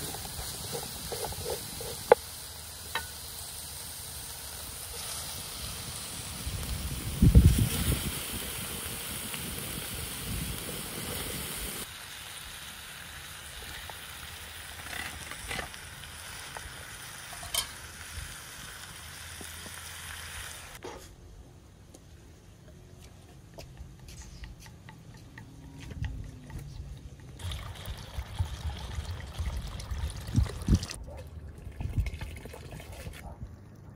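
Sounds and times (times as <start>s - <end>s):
food sizzling: 0.0s - 20.8s.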